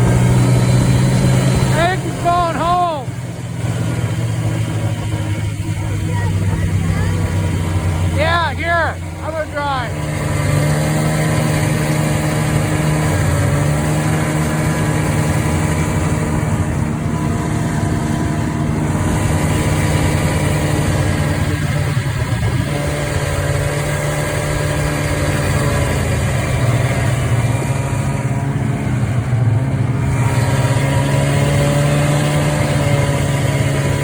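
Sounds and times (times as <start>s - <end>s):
snowmobile engine running: 0.0s - 34.0s.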